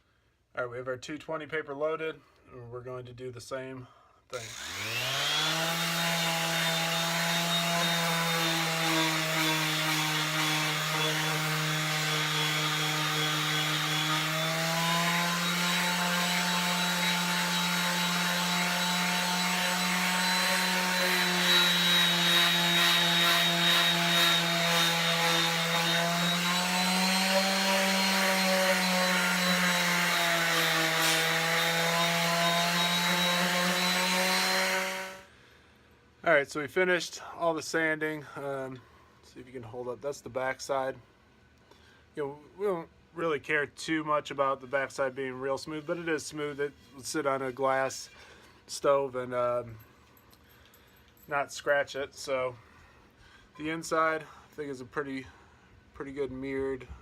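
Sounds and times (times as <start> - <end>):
orbital sander motor hum: 4.4 - 29.9
sandpaper rasping on iron: 6.0 - 35.1.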